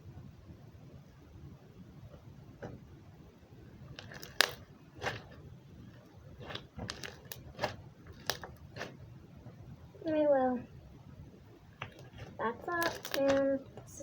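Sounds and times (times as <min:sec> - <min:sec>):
slime squishing with pops: 0:03.9 - 0:09.1, 0:11.8 - 0:13.8.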